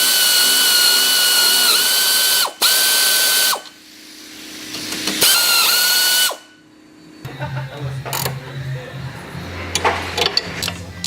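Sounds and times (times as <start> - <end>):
power tool motor whining: 0.0 - 3.8, 5.0 - 6.4.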